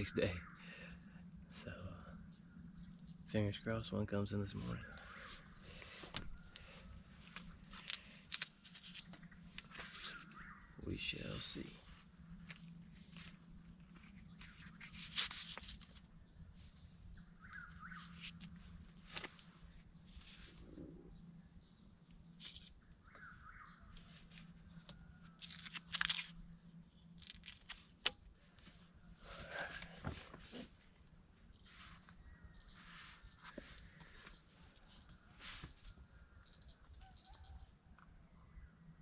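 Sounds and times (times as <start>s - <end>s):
faint bird chirps: 0.0s - 8.2s, 9.1s - 12.0s, 16.2s - 18.8s, 19.4s - 25.4s, 31.4s - 39.0s
faint low hum: 0.0s - 39.0s
rustling handling noises: 5.1s - 10.5s, 11.5s - 20.8s, 23.9s - 36.2s.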